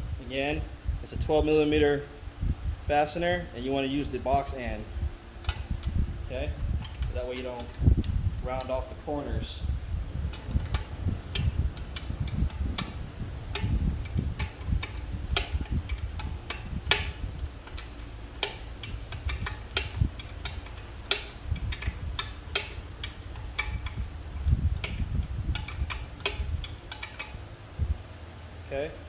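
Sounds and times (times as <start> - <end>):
wrench clicking on bolt: 5.4 - 6.0, 6.8 - 8.9, 10.3 - 27.4.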